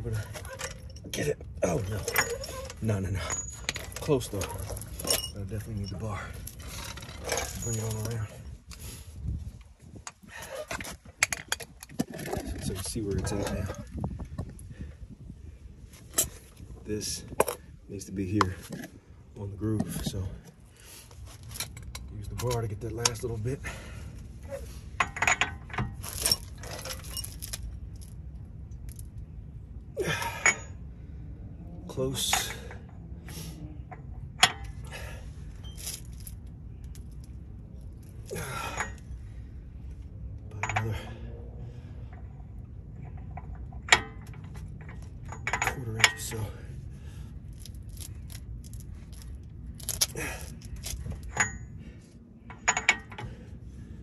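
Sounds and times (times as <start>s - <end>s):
metal tools clinking: 0.0s - 8.6s, 10.0s - 14.1s, 24.5s - 29.1s, 30.0s - 30.8s, 32.1s - 33.1s, 33.8s - 39.2s, 40.4s - 41.2s, 42.0s - 46.8s, 47.4s - 53.5s
metal clinks of breaker bar: 40.5s - 41.1s.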